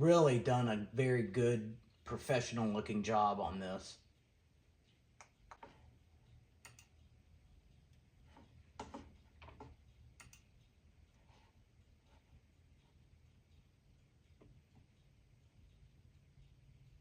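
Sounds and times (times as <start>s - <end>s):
low steady hum: 0.0s - 17.0s
faint irregular clicks: 4.0s - 17.0s.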